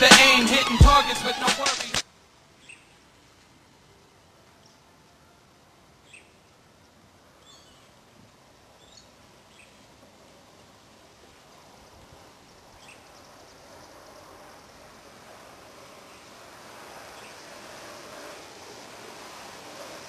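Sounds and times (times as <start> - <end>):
soft hiss: 0.0 - 20.0
small birds chirping: 2.6 - 3.0, 6.0 - 8.0, 8.7 - 10.0, 11.4 - 20.0.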